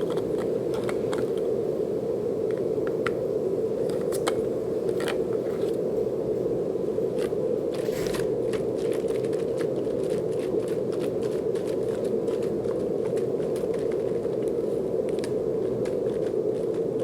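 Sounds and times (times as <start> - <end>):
faint clicks and crackles: 7.2 - 17.0
low rushing hiss: 7.8 - 8.9.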